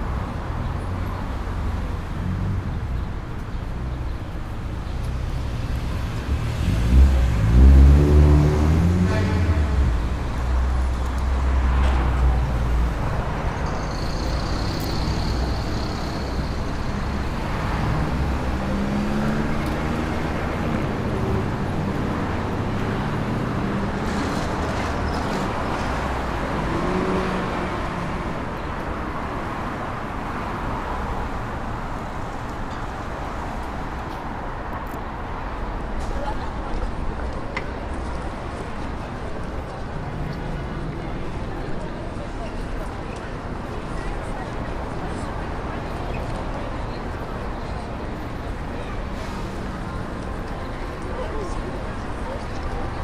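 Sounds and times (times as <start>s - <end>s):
traffic engine and tyre noise: 0.0s - 53.0s.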